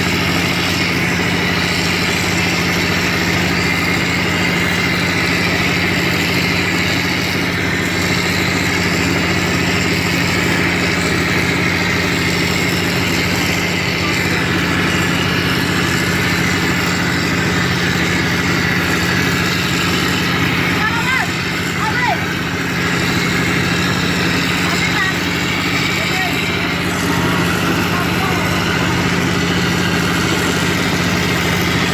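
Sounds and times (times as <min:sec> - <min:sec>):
machine motor humming: 0:00.0 - 0:31.9.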